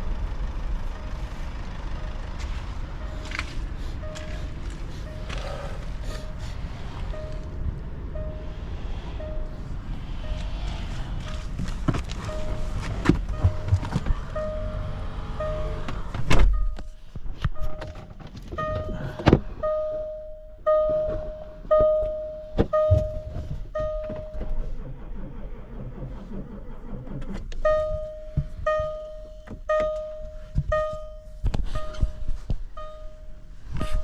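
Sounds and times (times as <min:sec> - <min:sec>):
electronic warning chime beeping: 0:19.6 - 0:24.4, 0:27.6 - 0:32.2, 0:32.8 - 0:34.0.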